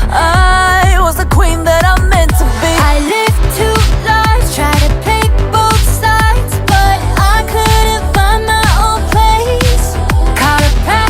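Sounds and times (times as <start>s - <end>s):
pop music with electronic beat: 0.0s - 11.0s.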